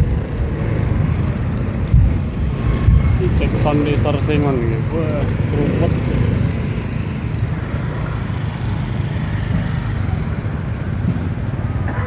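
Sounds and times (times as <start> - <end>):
road vehicle rumbling: 0.0 - 12.0.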